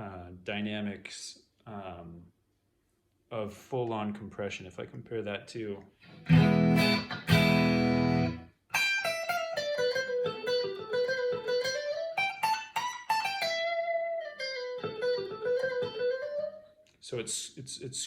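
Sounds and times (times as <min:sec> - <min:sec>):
clean electric guitar: 0:06.0 - 0:16.7.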